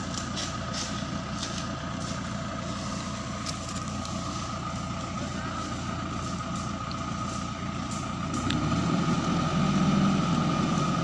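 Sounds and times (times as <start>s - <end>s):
truck engine running: 0.0s - 11.0s.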